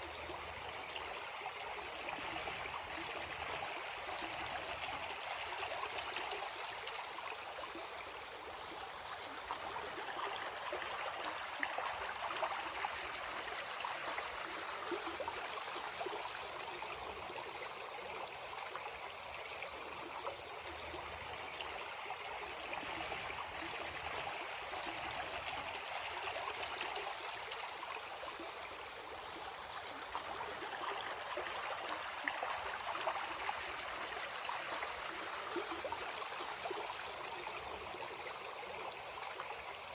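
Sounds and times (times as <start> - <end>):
creek water rushing over rocks: 0.0 - 39.9.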